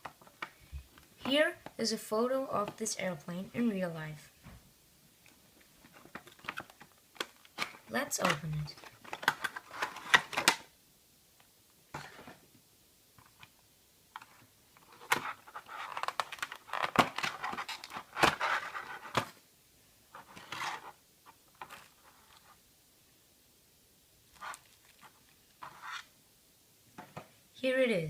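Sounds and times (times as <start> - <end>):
cardboard box and packaging opened: 5.9 - 10.6, 14.3 - 19.4.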